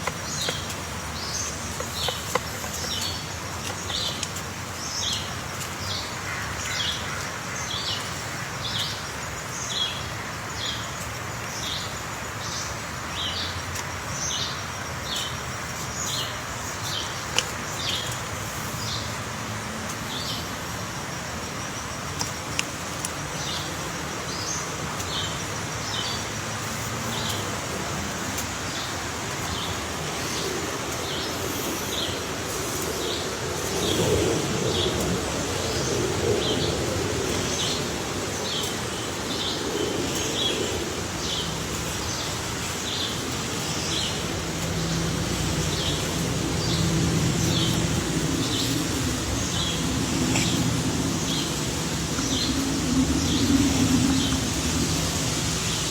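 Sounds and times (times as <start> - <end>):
steady background noise: 0.0 - 55.9
bird chirping: 35.8 - 55.9.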